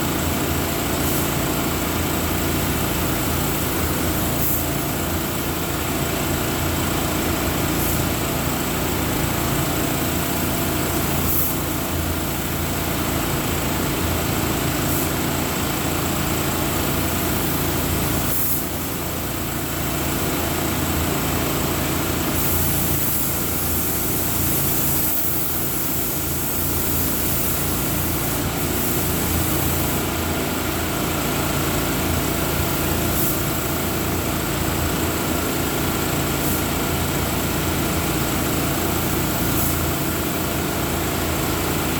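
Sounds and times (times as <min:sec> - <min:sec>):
paint spray hissing: 0:03.0 - 0:05.4, 0:10.4 - 0:12.4, 0:16.5 - 0:20.2, 0:22.2 - 0:30.1, 0:32.3 - 0:34.1, 0:36.4 - 0:36.8, 0:38.2 - 0:40.4.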